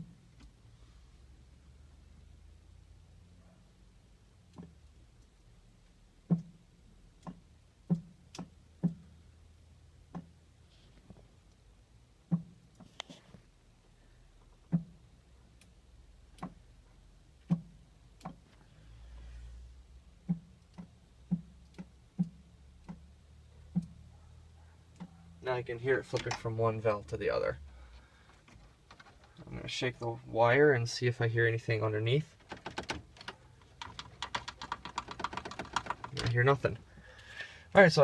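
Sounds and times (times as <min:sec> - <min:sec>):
fuel valve clicking with thuds: 0:06.2 - 0:09.2, 0:10.0 - 0:10.4, 0:12.2 - 0:13.0, 0:14.4 - 0:16.7, 0:17.4 - 0:18.6, 0:20.1 - 0:23.1, 0:23.7 - 0:24.0.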